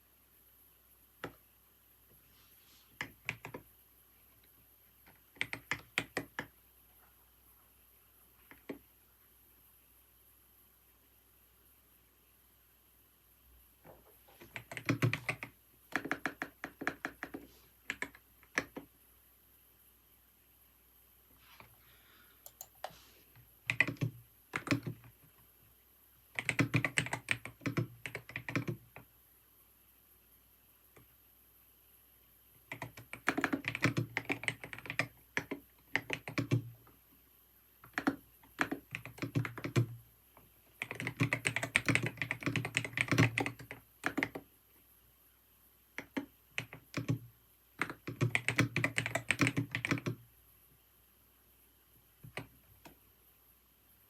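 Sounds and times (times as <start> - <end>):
typing on computer keyboard: 3.0 - 3.6, 5.0 - 6.5, 14.4 - 18.9, 22.4 - 23.0, 23.6 - 25.2, 26.3 - 29.1, 32.6 - 36.8, 37.8 - 40.0, 40.7 - 44.5, 46.0 - 50.2.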